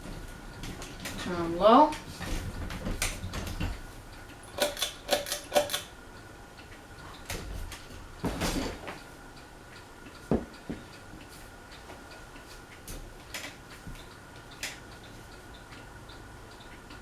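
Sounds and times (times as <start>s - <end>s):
ceiling fan hum: 0.0s - 17.0s
sharp clicks and light knocks: 0.6s - 3.8s, 4.5s - 5.9s, 12.8s - 15.8s.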